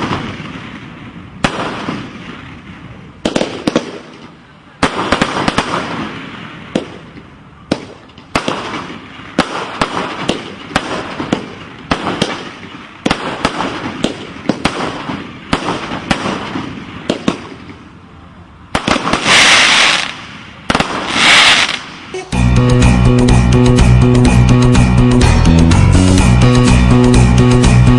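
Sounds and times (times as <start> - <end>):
fireworks bangs: 0.0 - 17.9, 18.7 - 22.4
loud crackling hisses: 18.9 - 22.1.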